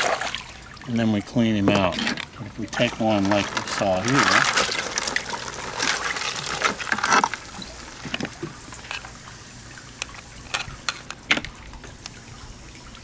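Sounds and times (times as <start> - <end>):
water splashing: 0.0 - 13.0
crab shell cracking: 1.7 - 9.2.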